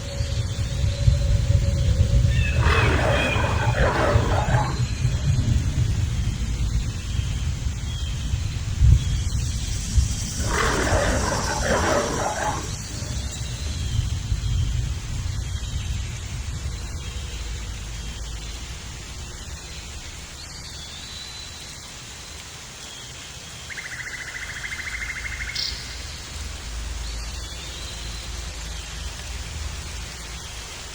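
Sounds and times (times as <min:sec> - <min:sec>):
low rumble: 0:00.0 - 0:15.4
rain-like hiss: 0:00.0 - 0:30.9
lion roar: 0:02.2 - 0:06.1, 0:10.3 - 0:13.5.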